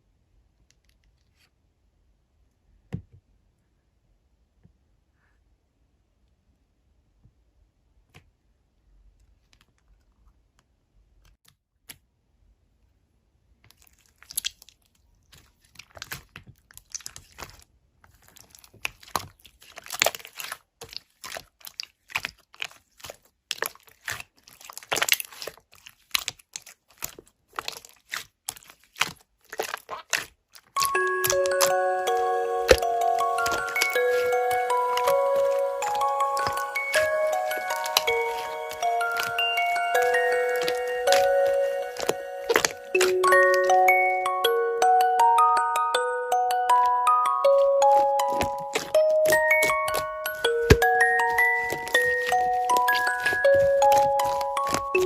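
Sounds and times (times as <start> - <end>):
slime squeezed sticky crackles: 13.8 - 17.6, 18.2 - 43.7, 47.5 - 55.0.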